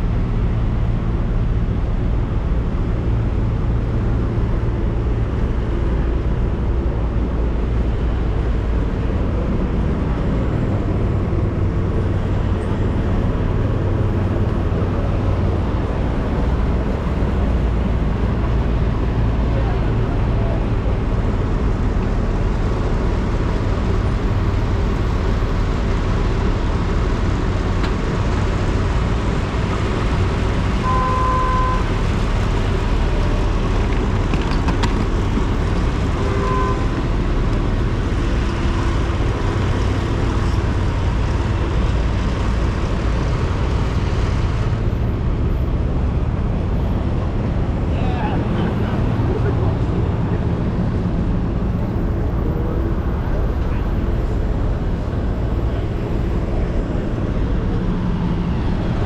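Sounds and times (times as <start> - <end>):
traffic rumble: 0.0 - 59.0
short horn beeps: 30.8 - 31.9, 36.2 - 37.0.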